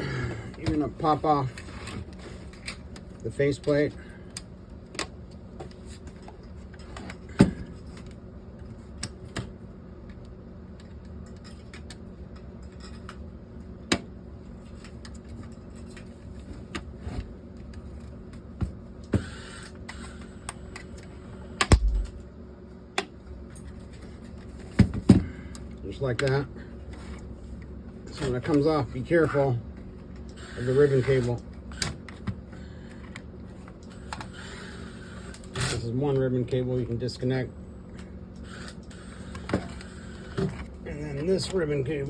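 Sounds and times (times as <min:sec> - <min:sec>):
low hum: 0:21.2 - 0:22.5.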